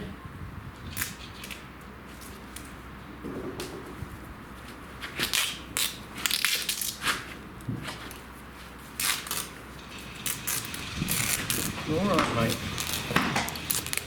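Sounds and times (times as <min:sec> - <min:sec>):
duct tape ripping: 0:05.0 - 0:08.2, 0:08.9 - 0:14.0.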